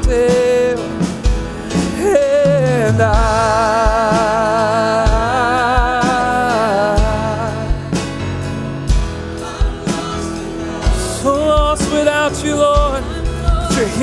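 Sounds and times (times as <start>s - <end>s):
kick drum beat: 0.0s - 2.2s, 3.0s - 6.4s, 7.0s - 8.3s, 8.9s - 10.0s, 10.8s - 12.0s, 12.7s - 14.0s
guitar: 0.0s - 14.0s
piano: 0.0s - 14.0s.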